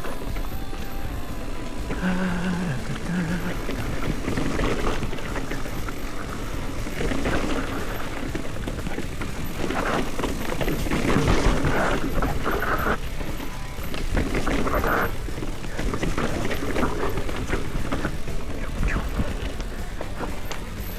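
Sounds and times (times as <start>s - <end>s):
bike frame and chain rattling: 0.0s - 20.9s
bike tyres on dirt and rocks: 0.0s - 20.9s.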